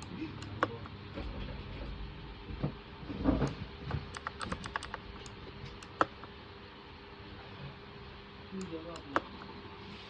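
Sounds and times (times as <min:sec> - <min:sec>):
clicky mechanical keyboard typing: 0:04.1 - 0:06.2.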